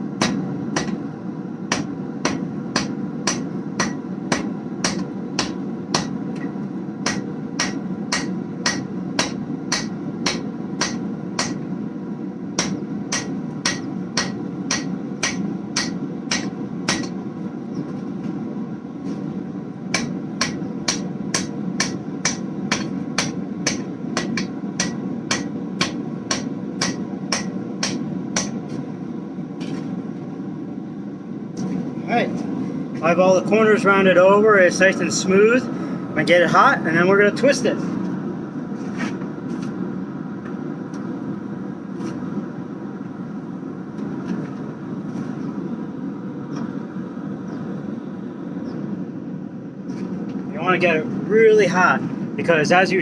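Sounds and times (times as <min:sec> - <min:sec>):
hammer striking metal on anvil: 0:00.2 - 0:01.0, 0:01.7 - 0:11.7, 0:12.6 - 0:17.2, 0:19.9 - 0:28.6.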